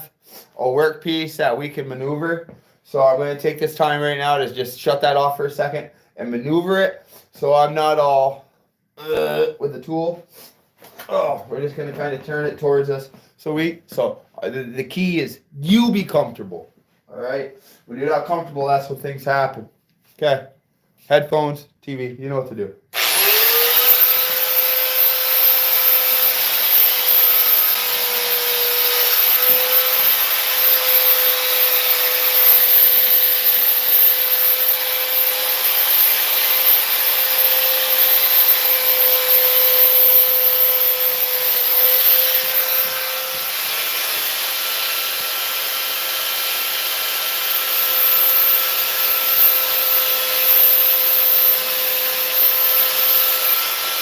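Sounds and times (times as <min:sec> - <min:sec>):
sander grinding fiberglass: 0:23.0 - 0:54.0.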